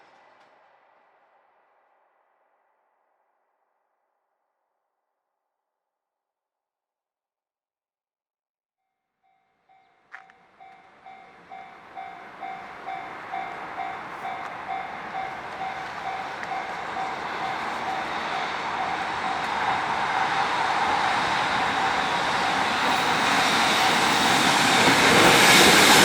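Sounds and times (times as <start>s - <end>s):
approaching freight train: 9.6s - 26.0s
level-crossing warning bell dinging: 9.7s - 26.0s.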